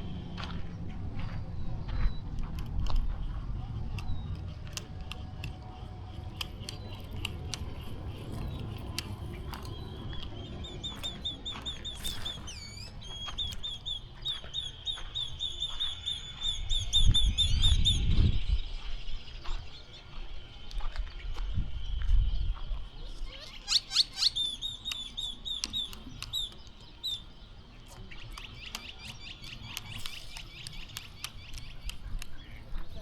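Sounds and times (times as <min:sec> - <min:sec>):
handling noise clicks and rumbling: 0:00.0 - 0:13.7
bird chirping rapidly: 0:03.3 - 0:18.2, 0:23.1 - 0:33.0.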